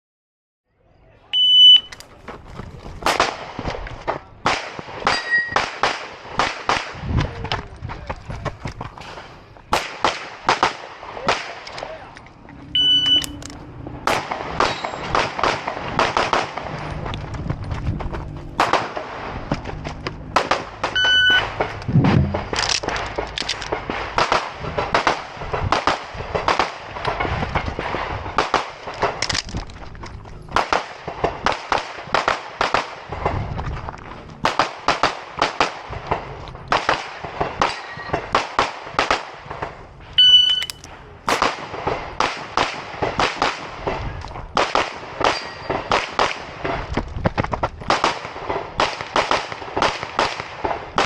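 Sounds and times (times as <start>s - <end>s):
electronic timer beep: 1.4s - 2.0s, 12.7s - 13.4s, 21.0s - 21.5s, 40.2s - 40.8s
pistol shots: 9.7s - 12.0s, 12.8s - 16.9s, 18.6s - 19.4s, 40.2s - 43.9s, 47.8s - 51.0s.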